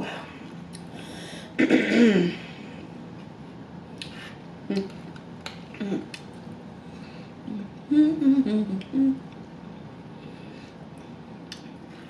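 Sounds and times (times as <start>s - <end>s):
mouth clicks and lip smacks chewing: 11.0s - 11.8s.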